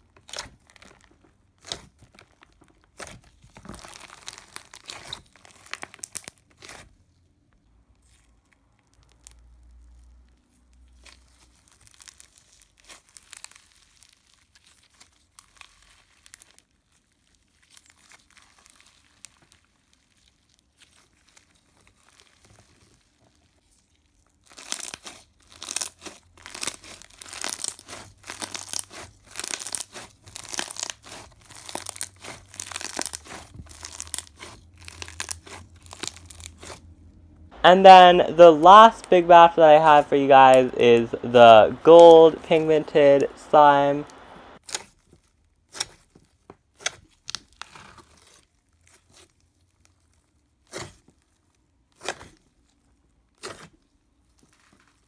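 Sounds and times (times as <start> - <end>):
slime crackling when stretched: 25.6 - 36.7.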